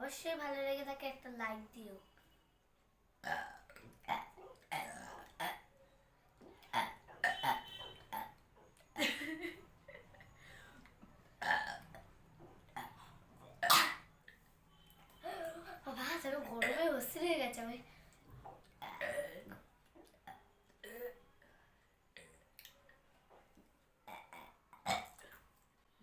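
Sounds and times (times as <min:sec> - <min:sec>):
person burping: 0:03.2 - 0:05.7, 0:06.6 - 0:08.4, 0:11.4 - 0:12.0, 0:12.8 - 0:14.1, 0:18.8 - 0:19.6, 0:20.2 - 0:21.2, 0:24.1 - 0:25.4.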